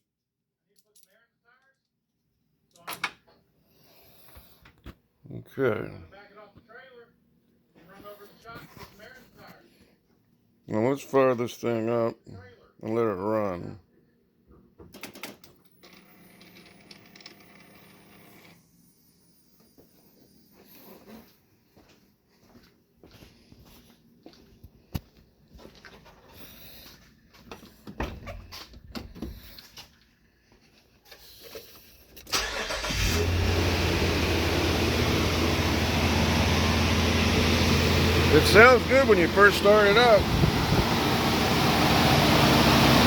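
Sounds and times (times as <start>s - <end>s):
car engine starting and idling: 32.2s - 43.0s
electric fuel pump humming: 32.4s - 43.0s.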